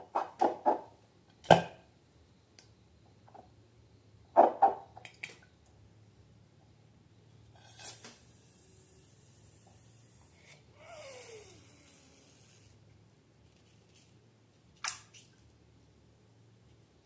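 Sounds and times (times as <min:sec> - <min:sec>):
soft hiss: 0:05.3 - 0:17.0.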